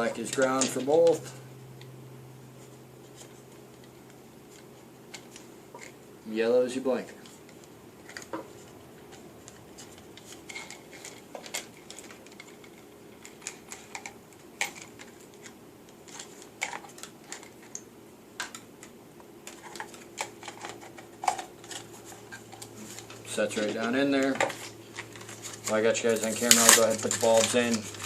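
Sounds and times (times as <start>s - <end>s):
faint steady hum: 0.0s - 28.0s
hands handling wiring and parts: 0.1s - 1.4s, 7.2s - 28.0s.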